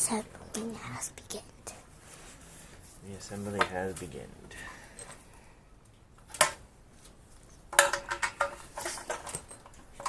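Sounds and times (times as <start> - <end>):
metal parts clinking: 7.7 - 9.8.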